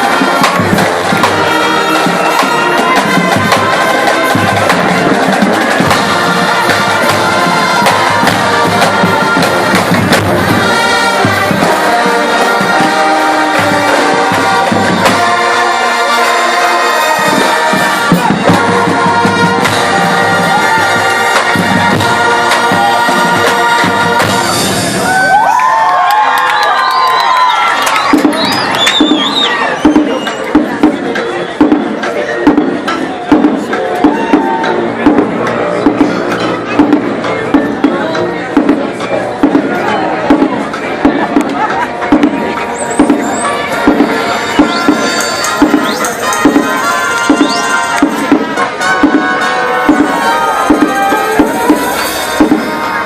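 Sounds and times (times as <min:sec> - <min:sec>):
drum strikes: 0:00.0 - 0:16.3, 0:17.0 - 0:25.4, 0:27.9 - 0:53.0
brass horns playing chords: 0:00.0 - 0:25.1, 0:32.3 - 0:53.0.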